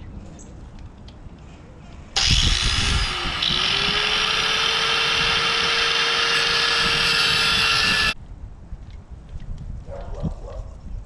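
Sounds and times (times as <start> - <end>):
power tool grinding metal: 2.2 - 8.2.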